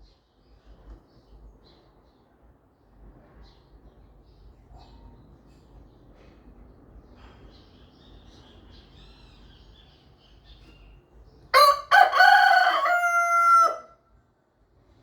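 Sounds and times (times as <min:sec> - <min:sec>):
faint small-bird chirps: 0:03.4 - 0:06.4, 0:07.1 - 0:11.3
rooster crowing: 0:11.5 - 0:14.0.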